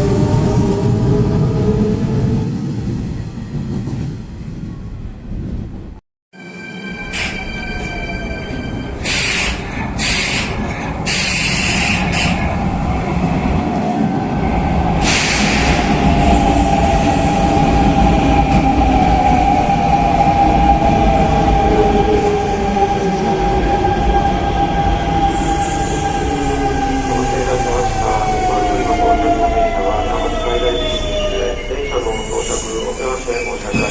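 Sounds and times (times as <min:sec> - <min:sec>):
electric train rumble: 0:00.0 - 0:33.9.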